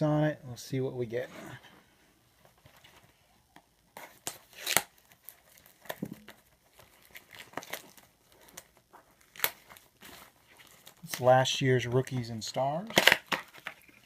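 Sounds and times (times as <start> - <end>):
packaging tearing and crinkling: 4.0 - 11.3, 12.8 - 13.9.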